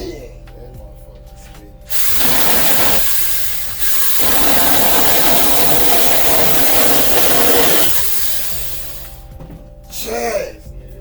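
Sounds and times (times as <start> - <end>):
power saw whirring: 1.9 - 9.2.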